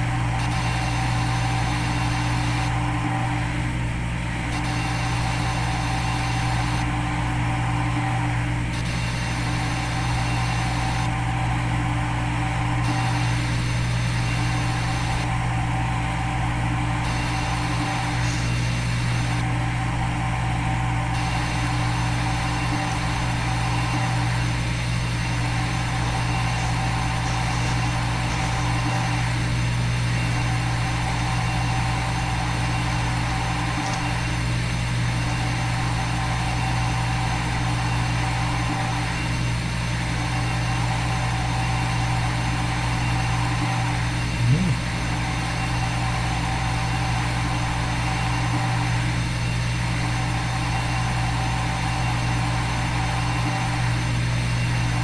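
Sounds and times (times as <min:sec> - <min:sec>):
milling machine drone: 0:00.0 - 0:55.0.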